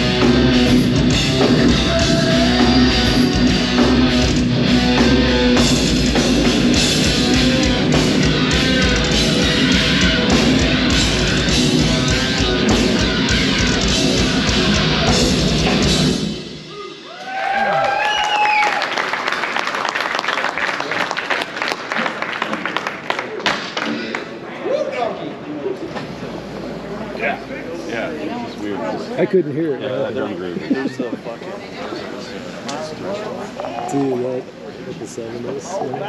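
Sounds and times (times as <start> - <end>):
heavy metal band playing live: 0.0 - 16.8
crowd reacting: 0.0 - 20.4.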